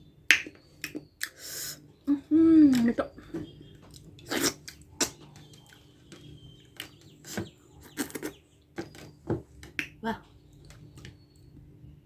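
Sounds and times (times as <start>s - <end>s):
wet lip smacks: 0.3s - 1.5s, 4.2s - 5.2s
mouth clicks: 0.3s - 1.8s, 3.9s - 5.8s
person chewing: 3.9s - 5.8s, 6.8s - 8.4s.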